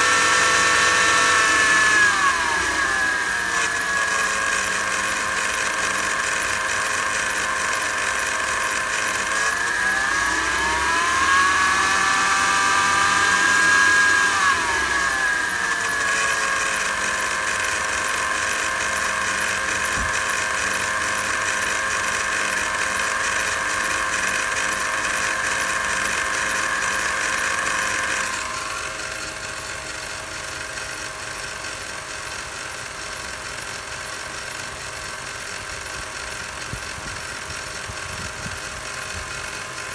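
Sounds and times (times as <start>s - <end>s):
car engine idling and revving: 0.0s - 30.0s
high-pitched chattering belt whine: 0.0s - 39.9s.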